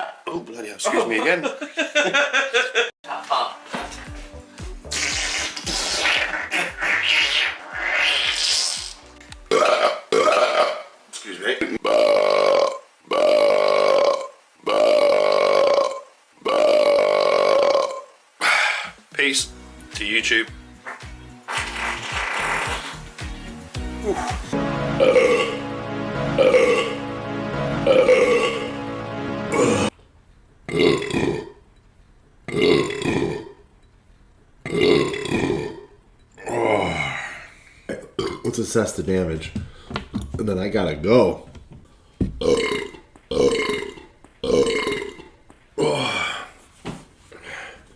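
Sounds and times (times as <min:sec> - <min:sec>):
loud belches: 0:09.5 - 0:10.9, 0:11.7 - 0:18.1, 0:25.0 - 0:25.6, 0:26.4 - 0:27.0, 0:27.8 - 0:28.7, 0:30.7 - 0:31.6, 0:32.5 - 0:33.6, 0:34.6 - 0:37.3, 0:37.9 - 0:38.6, 0:42.4 - 0:46.3.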